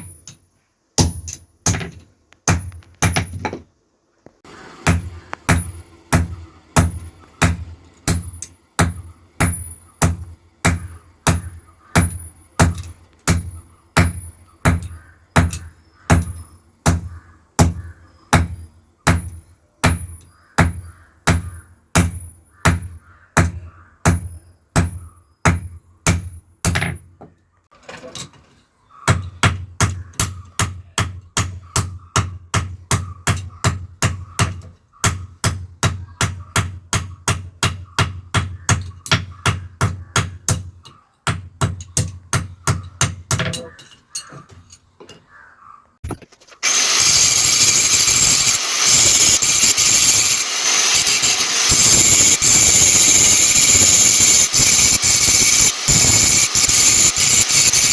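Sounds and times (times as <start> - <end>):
machine running loudly: 46.6 - 57.9.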